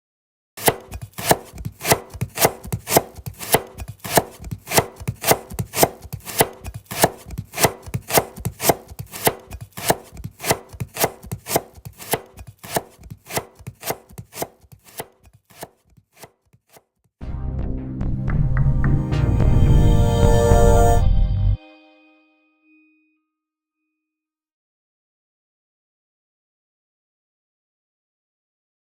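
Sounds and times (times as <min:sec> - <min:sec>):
knife slicing carrot: 0:00.6 - 0:16.9.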